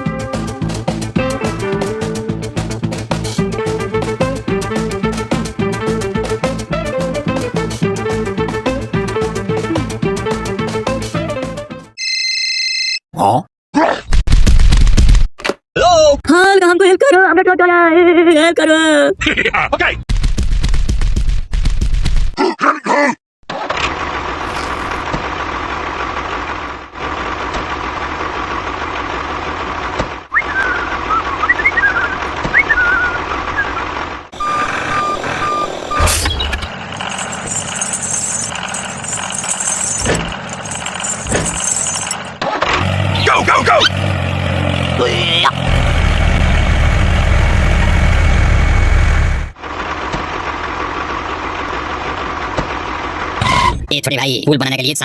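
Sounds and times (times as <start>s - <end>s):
engine running: 23.6s - 53.5s.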